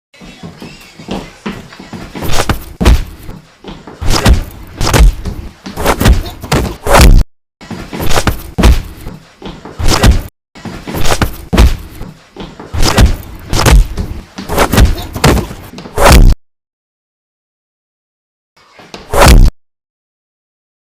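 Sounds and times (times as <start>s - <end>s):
heavy punch impacts: 2.3s - 3.3s, 4.0s - 7.2s, 8.0s - 9.1s, 9.8s - 10.3s, 11.0s - 12.1s, 12.8s - 16.4s, 19.2s - 19.5s.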